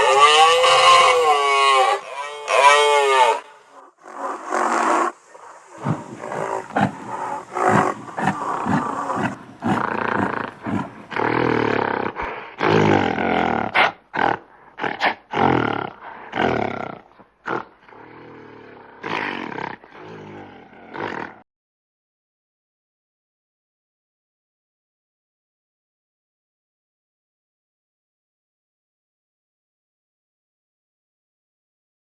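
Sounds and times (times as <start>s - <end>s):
lion-like roars and growls: 5.8s - 21.4s.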